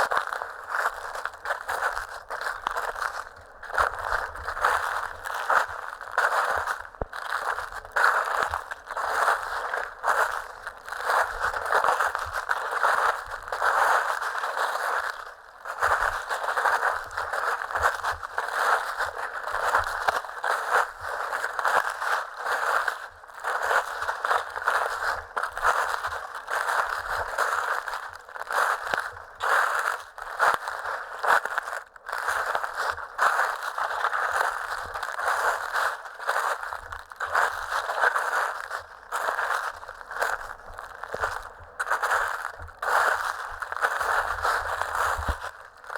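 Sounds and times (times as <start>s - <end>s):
footsteps crunching dry leaves: 0.0s - 45.9s.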